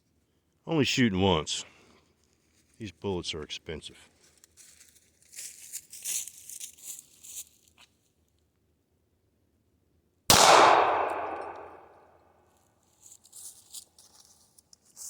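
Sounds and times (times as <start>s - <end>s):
pistol shot: 10.3s - 12.0s.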